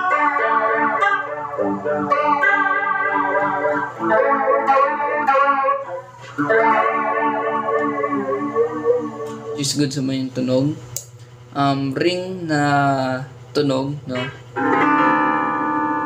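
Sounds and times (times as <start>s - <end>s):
electric guitar chords with flanger: 0.0s - 9.8s, 14.1s - 16.0s.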